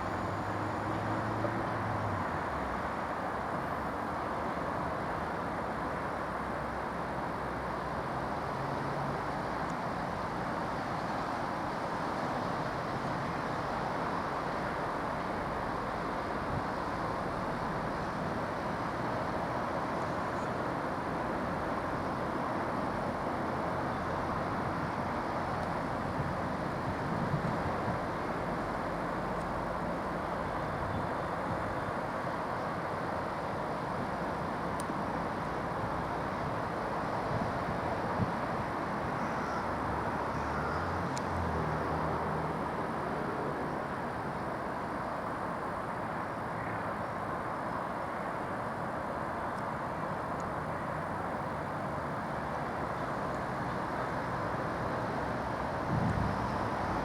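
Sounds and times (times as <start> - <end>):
steady vehicle noise: 0.0 - 57.0.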